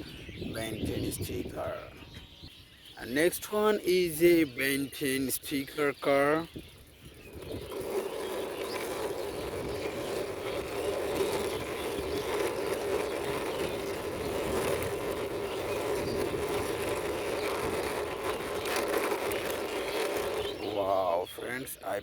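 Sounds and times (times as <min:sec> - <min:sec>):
toy car wheels rolling: 0:05.0 - 0:21.6.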